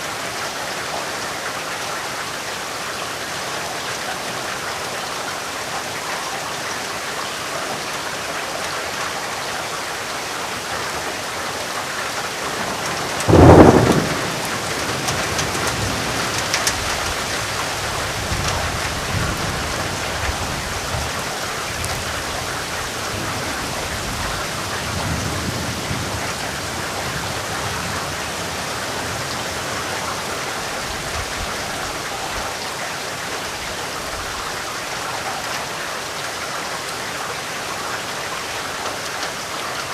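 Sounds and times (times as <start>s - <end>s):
steady rain: 0.0s - 39.9s
rolling thunder rumbles: 12.5s - 30.2s
thunderclap: 12.6s - 21.1s.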